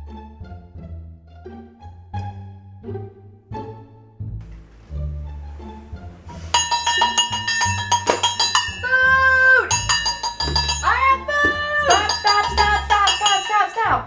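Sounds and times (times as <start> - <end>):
plucked bass notes: 4.2 - 13.1
bell-like ringing strikes: 6.3 - 8.8.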